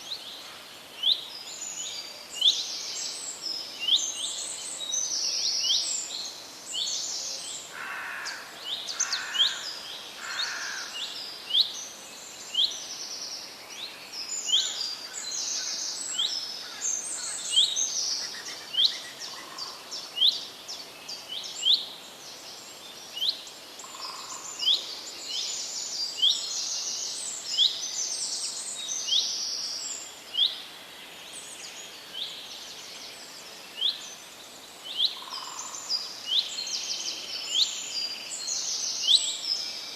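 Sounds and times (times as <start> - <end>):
birds singing and chirping: 31.3 - 39.9.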